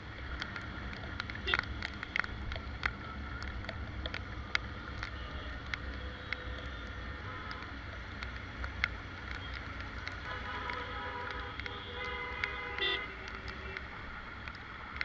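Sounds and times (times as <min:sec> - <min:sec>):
faint street noise: 0:00.0 - 0:15.0.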